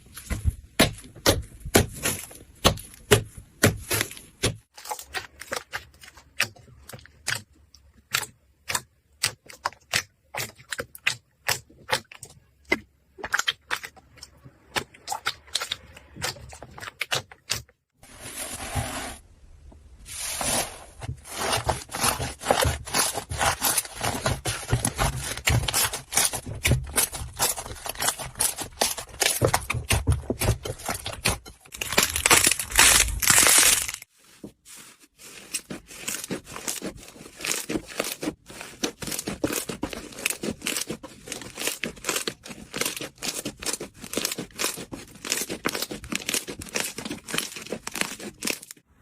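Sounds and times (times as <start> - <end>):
slime crackling: 20.1 - 48.8.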